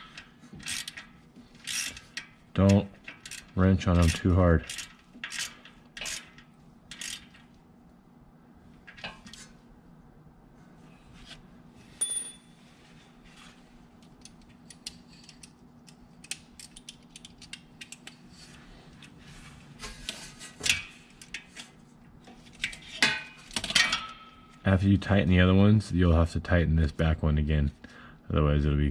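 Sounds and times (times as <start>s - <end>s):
small wrench clicking: 0.0s - 7.4s, 14.2s - 18.2s
faint steady hum: 0.0s - 28.9s
metal tools clinking: 12.0s - 12.6s.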